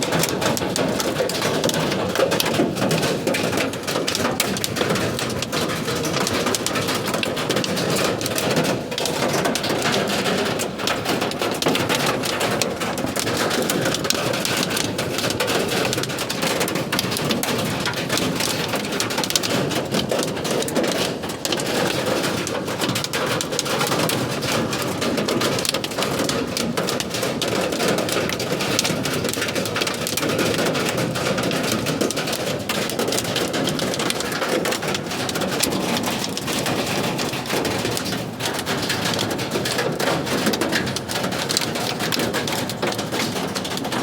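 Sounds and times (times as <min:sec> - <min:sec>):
hailstones clattering: 0:00.0 - 0:44.0.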